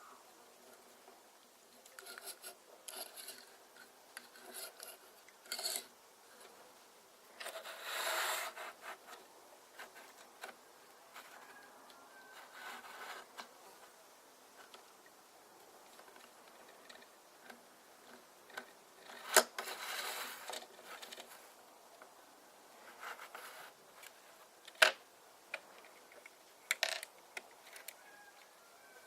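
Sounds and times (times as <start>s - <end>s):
plastic bricks clicking: 24.7s - 28.0s.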